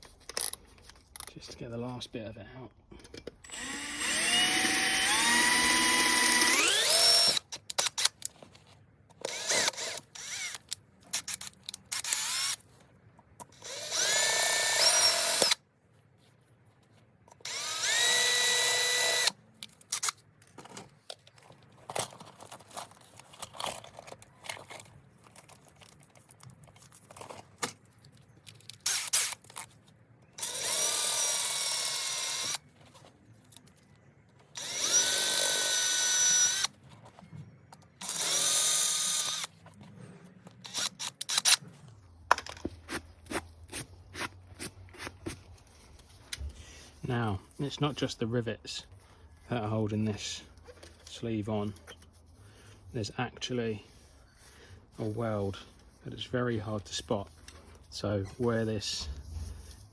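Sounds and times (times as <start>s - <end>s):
electric drill whining: 3.4s - 8.1s, 9.2s - 10.6s, 11.9s - 12.6s, 13.6s - 15.6s, 17.4s - 19.4s, 28.9s - 29.4s, 30.4s - 32.6s, 34.6s - 36.7s, 38.0s - 39.5s, 40.6s - 41.6s.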